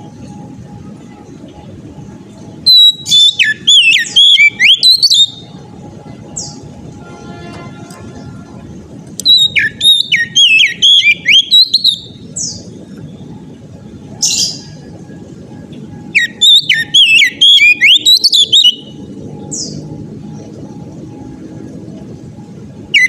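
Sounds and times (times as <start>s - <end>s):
low background noise: 0.0s - 23.0s
bird singing whistled phrases: 2.6s - 5.5s, 9.2s - 13.2s, 16.1s - 19.8s
harsh bird calls: 9.2s - 12.8s, 16.2s - 19.9s.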